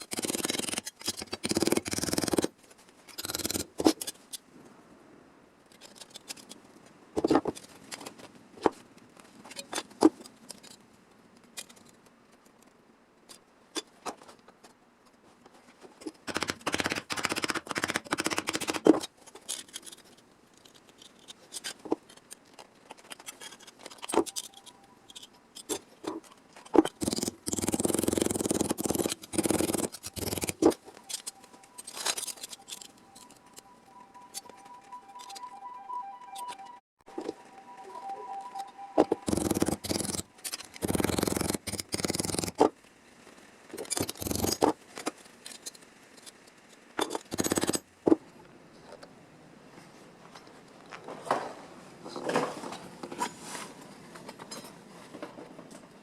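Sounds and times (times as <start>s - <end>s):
clicks and snips on sheet steel: 0.0s - 2.5s, 3.1s - 4.4s, 5.7s - 6.6s, 11.4s - 12.6s, 16.0s - 32.9s, 39.3s - 42.7s, 43.7s - 46.4s.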